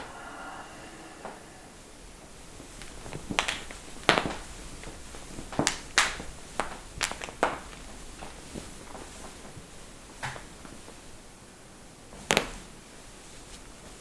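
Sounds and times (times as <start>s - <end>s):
joints cracking and popping: 2.8s - 9.6s.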